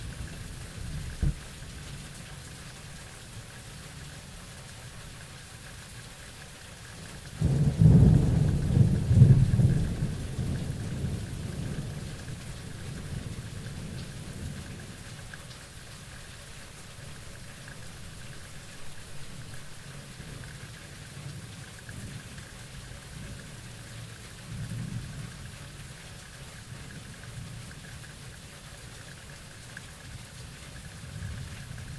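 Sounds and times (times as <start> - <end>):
steady rain hissing: 0.0 - 31.9
thunderclap rumbling: 7.4 - 14.8.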